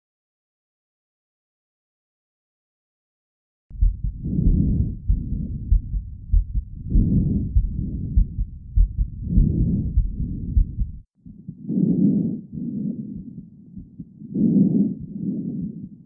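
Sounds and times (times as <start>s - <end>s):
heartbeat thuds: 3.7s - 15.9s
breathing through stethoscope: 14.2s - 16.0s.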